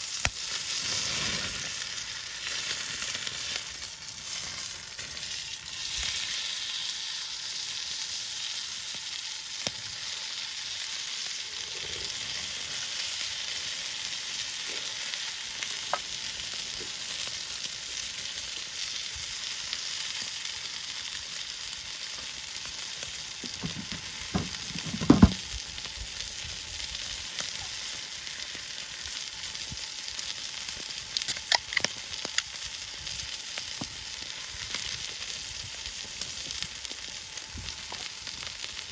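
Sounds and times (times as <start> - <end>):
food sizzling in a pan: 0.0 - 38.9
dull knocks: 23.4 - 25.4.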